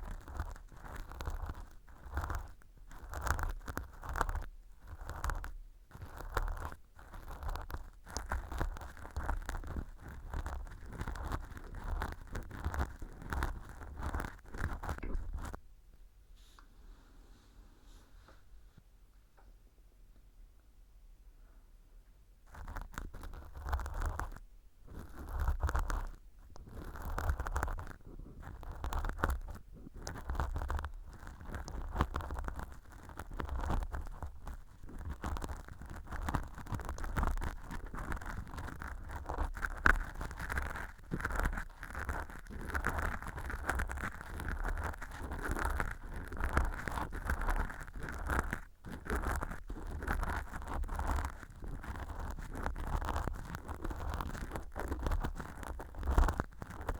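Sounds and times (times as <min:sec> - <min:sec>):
ear pick scraping fake earwax: 0:22.5 - 0:56.9.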